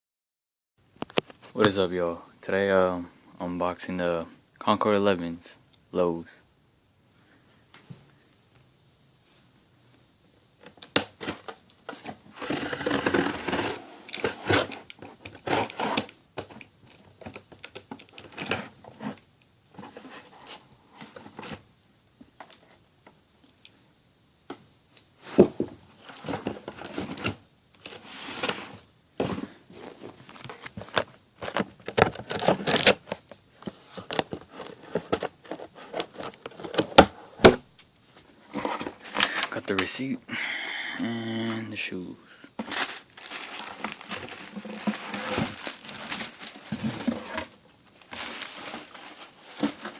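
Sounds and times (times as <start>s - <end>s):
cardboard box scrapes and knocks: 11.3s - 14.8s, 15.4s - 16.0s, 42.6s - 49.9s
paper tearing and crinkling: 12.4s - 14.8s, 15.4s - 16.1s, 42.6s - 47.3s.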